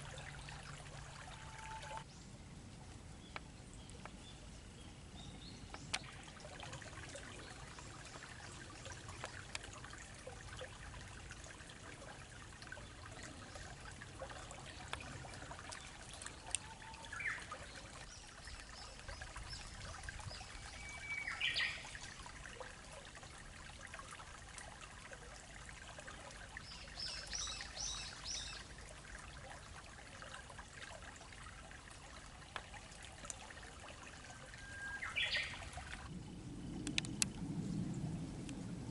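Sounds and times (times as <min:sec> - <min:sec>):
water trickling in river: 0:00.0 - 0:38.9
bird calls: 0:34.5 - 0:35.7.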